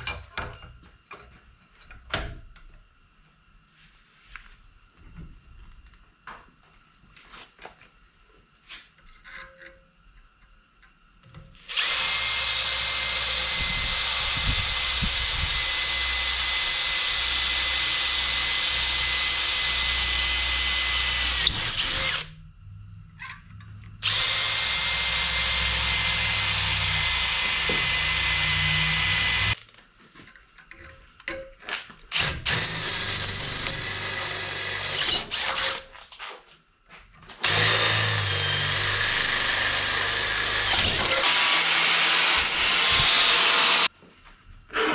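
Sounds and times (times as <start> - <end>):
angle grinder grinding steel: 37.5 - 43.9.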